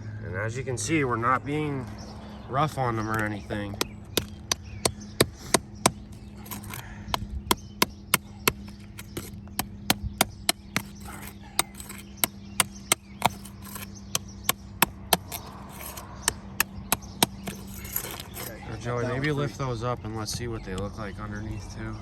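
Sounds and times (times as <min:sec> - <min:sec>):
sharp short knocks: 0:03.2 - 0:18.5.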